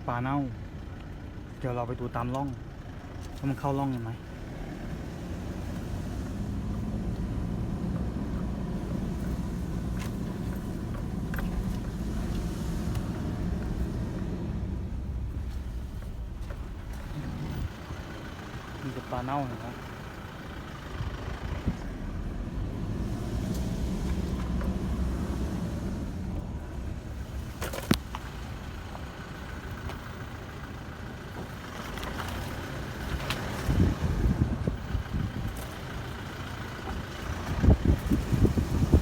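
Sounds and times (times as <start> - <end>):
wind buffeting microphone: 33.2 - 36.1, 36.9 - 39.0.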